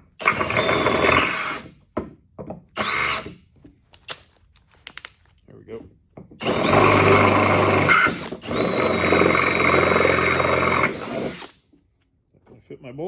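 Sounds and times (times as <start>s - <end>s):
cordless drill running under load: 0.2s - 1.7s, 2.8s - 3.4s, 6.4s - 11.6s.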